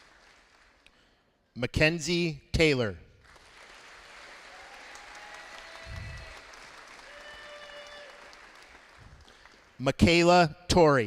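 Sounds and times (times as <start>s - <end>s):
audience applauding: 0.0s - 0.9s, 3.2s - 9.8s.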